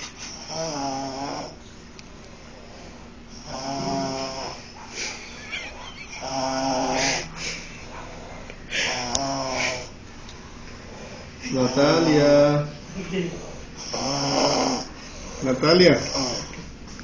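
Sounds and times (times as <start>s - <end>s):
person snoring: 0.2s - 1.6s, 2.5s - 5.2s, 6.2s - 10.0s, 13.4s - 16.6s.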